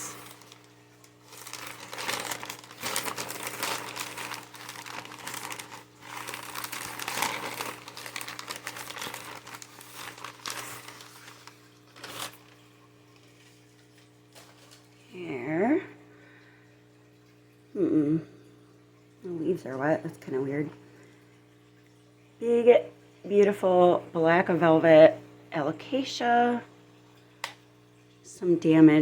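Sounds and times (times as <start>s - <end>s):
packing material crinkling: 0.0s - 15.0s.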